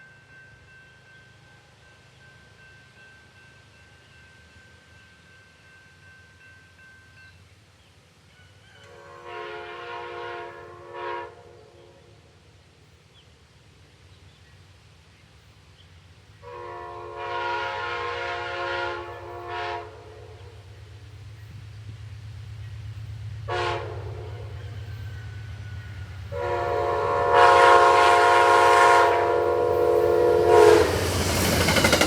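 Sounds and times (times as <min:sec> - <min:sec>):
locomotive air horn blasts: 0:08.9 - 0:11.8, 0:16.4 - 0:20.5, 0:23.5 - 0:24.5, 0:26.3 - 0:31.2.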